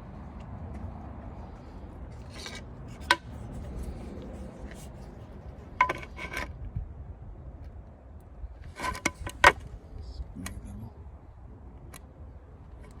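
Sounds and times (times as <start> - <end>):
steady low rumble: 9.3 - 13.0.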